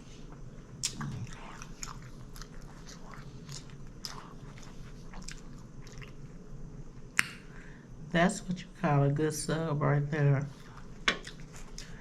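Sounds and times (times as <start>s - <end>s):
biting and chewing sandwich: 0.8s - 6.3s.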